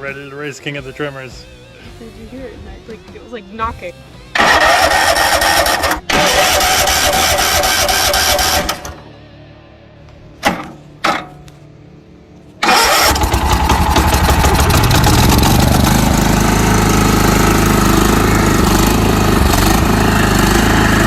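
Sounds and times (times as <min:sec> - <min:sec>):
lawn mower engine running: 0:04.3 - 0:09.1, 0:12.6 - 0:21.0.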